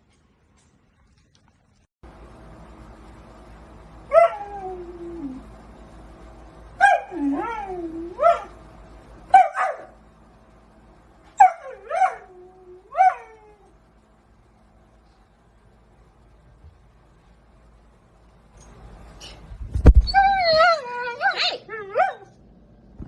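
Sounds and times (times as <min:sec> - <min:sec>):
dog whining and yelping: 0:06.8 - 0:08.6, 0:19.8 - 0:22.4.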